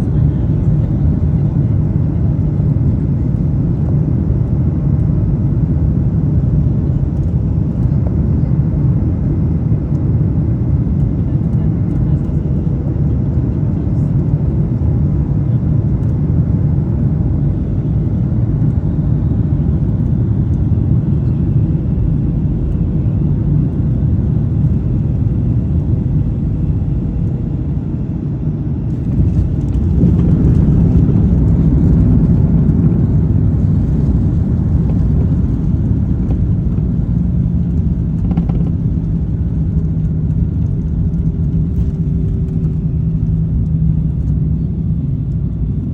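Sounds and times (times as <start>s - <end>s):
aircraft cabin engine rumble: 0.0s - 45.9s
low hum: 15.9s - 45.9s.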